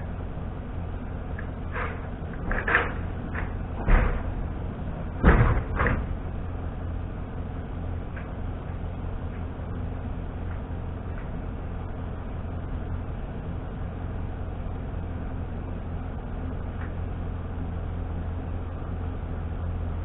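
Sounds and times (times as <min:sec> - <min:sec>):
steady low hum: 0:00.0 - 0:20.0
heavy knocks: 0:02.4 - 0:06.2.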